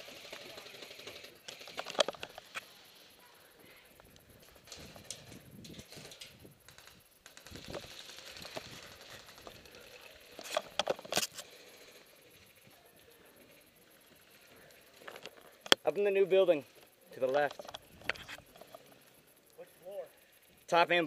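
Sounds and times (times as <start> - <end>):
gear rattling and clicking: 0.0 - 2.7, 3.9 - 19.0.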